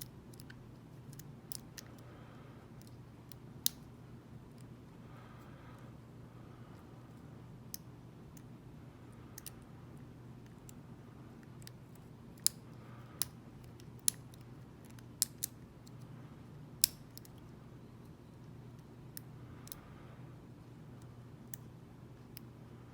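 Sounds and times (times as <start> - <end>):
lock pick metallic clicks: 16.8 - 17.4.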